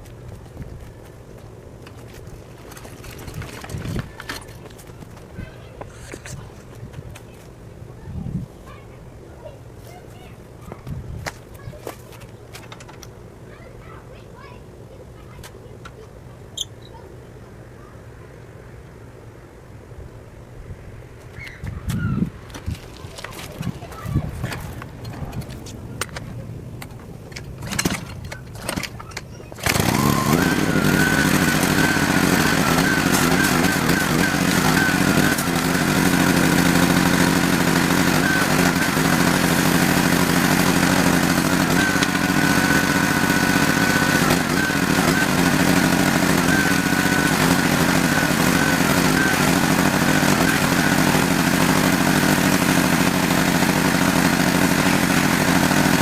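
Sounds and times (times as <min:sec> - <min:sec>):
pressure washer running: 0:29.6 - 0:56.0.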